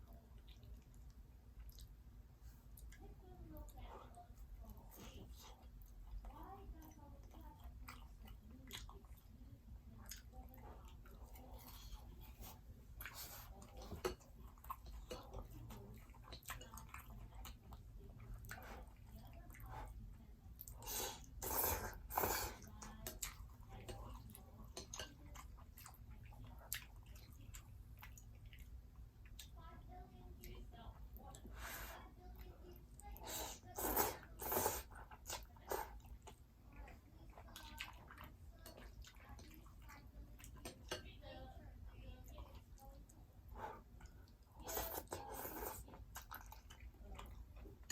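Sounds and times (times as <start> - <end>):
chewing fried food: 0.0 - 47.9
person chewing fried food: 42.6 - 47.9.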